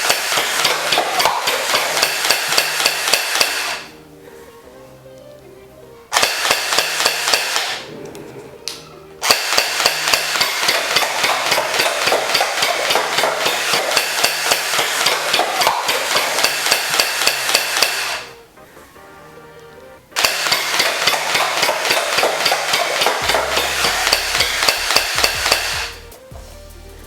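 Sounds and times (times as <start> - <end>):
toy rifle firing full auto: 0.0 - 4.0, 6.1 - 7.9, 9.2 - 18.4, 20.2 - 26.0.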